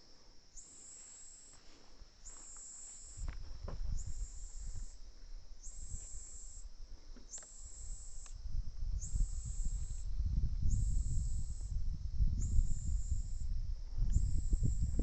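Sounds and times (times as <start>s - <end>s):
high-pitched insect trill: 0.0s - 15.0s
wind rumble on microphone: 3.2s - 15.0s.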